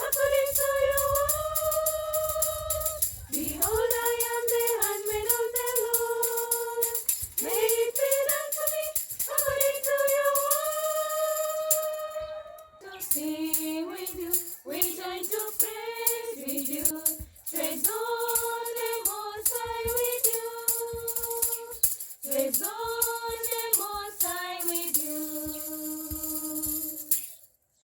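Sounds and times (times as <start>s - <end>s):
hymn with held vocal notes: 0.0s - 27.2s
jingling tambourine-like beat: 0.0s - 27.5s.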